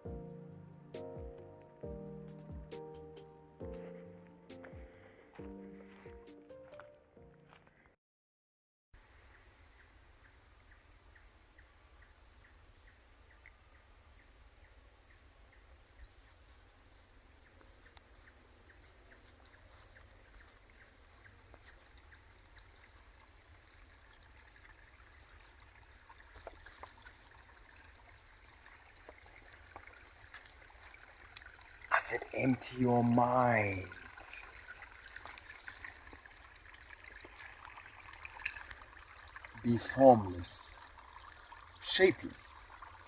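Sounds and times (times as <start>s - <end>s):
faint trickling water: 9.0s - 43.0s.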